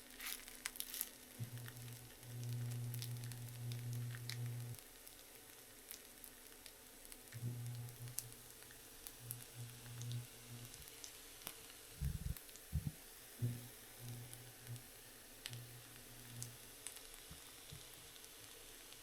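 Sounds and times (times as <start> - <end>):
sharp crackles: 0.0 - 4.8, 7.3 - 10.9, 15.4 - 17.9
faint steady hiss: 0.0 - 19.0
low hum: 1.4 - 4.8, 7.4 - 8.5, 12.0 - 16.6.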